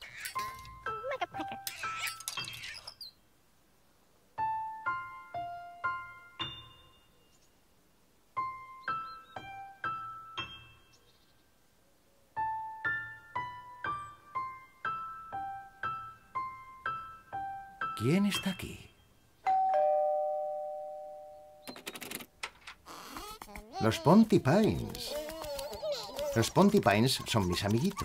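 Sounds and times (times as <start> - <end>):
bell-like keyboard melody: 4.8 - 7.2, 19.5 - 21.7.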